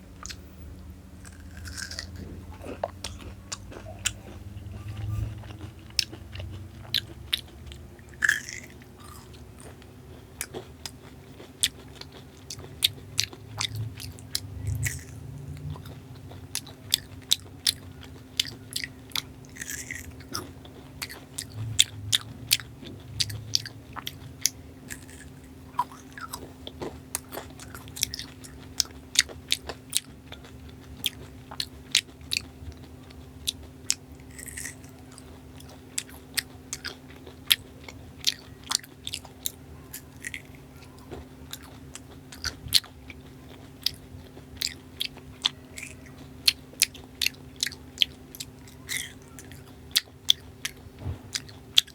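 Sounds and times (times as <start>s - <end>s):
low hum: 0.0s - 10.8s, 12.7s - 28.0s
chewing and biting: 0.2s - 51.9s.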